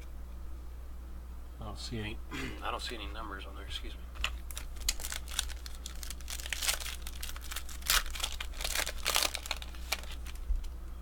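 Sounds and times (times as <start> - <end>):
foil wrapper crinkling and tearing: 4.2 - 10.8.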